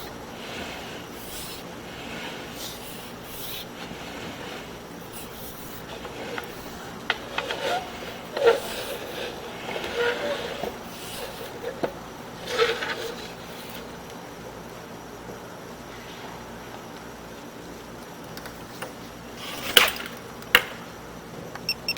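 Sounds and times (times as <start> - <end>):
push cable scraping inside drain: 0.0 - 13.9
steady hiss: 0.0 - 17.8.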